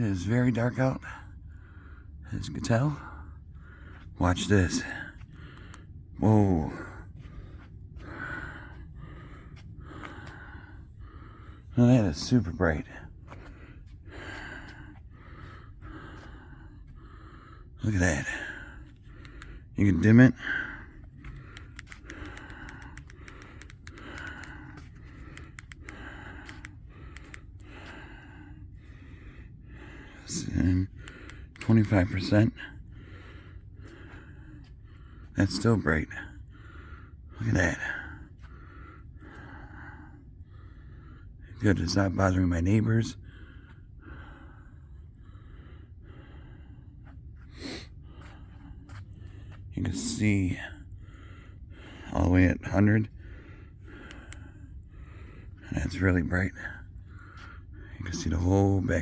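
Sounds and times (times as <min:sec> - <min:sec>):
person breathing slowly: 0:00.9 - 0:42.1, 0:42.8 - 0:59.0
faint clicks: 0:05.1 - 0:05.9, 0:18.7 - 0:20.2, 0:20.8 - 0:28.1, 0:30.9 - 0:32.5, 0:54.0 - 0:54.6.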